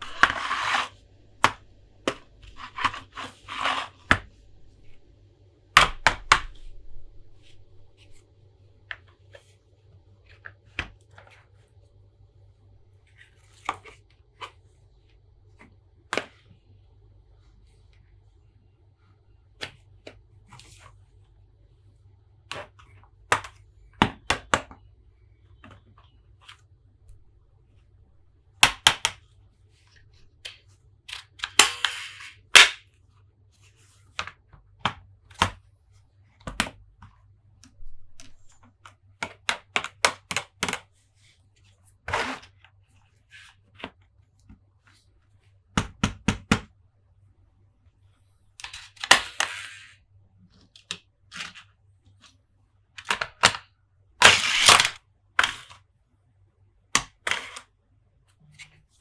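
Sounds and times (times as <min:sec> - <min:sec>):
plastic toy scraping: 0:00.0 - 0:01.0, 0:02.4 - 0:04.1, 0:54.2 - 0:55.0.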